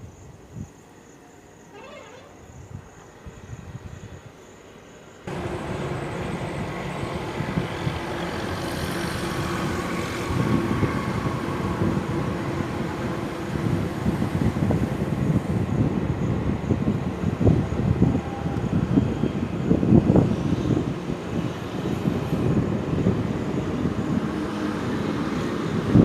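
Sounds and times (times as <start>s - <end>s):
road noise: 0.0s - 26.0s
heavy vehicle engine running: 5.3s - 26.0s.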